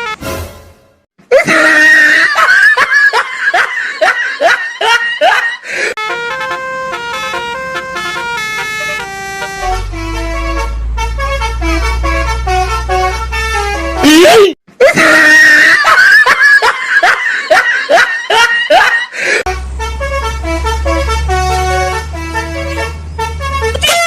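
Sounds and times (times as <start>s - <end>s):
bus horn playing melody: 0.0s - 0.7s, 5.9s - 14.3s, 19.4s - 24.0s
person laughing: 1.3s - 6.7s, 14.1s - 19.5s.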